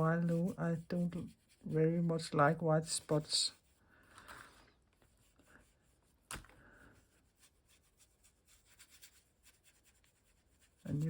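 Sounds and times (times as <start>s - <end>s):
crayon rubbing on paper: 0.0s - 3.8s, 7.0s - 11.0s.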